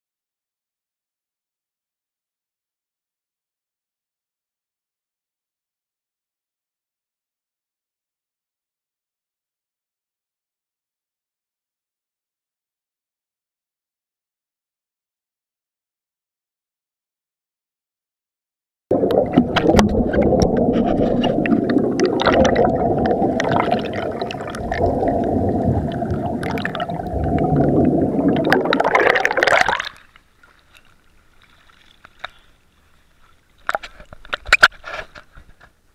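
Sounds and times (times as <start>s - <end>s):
water sloshing and gurgling: 18.9s - 35.5s.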